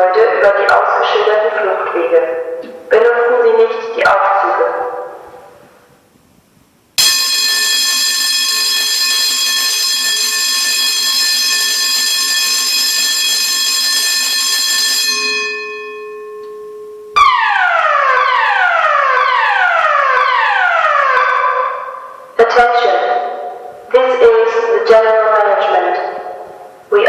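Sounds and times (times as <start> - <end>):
falling alarm tone: 7.0 - 22.3
shrill alarm tone: 7.0 - 22.3.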